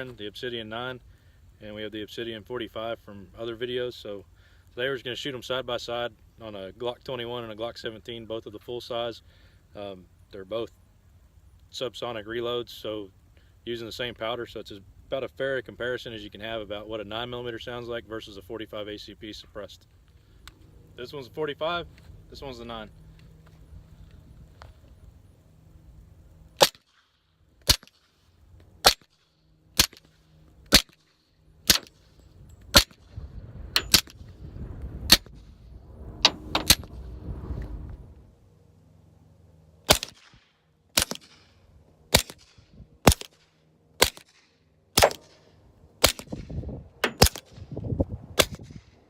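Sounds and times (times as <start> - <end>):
suppressed pistol shots: 26.6 - 27.0, 30.7 - 31.0, 31.6 - 32.0, 33.8 - 34.2, 39.9 - 41.5, 42.1 - 47.7, 48.4 - 48.9.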